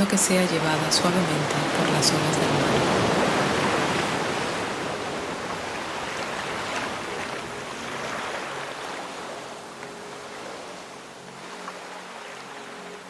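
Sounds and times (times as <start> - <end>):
ocean wave washing: 0.0 - 13.0.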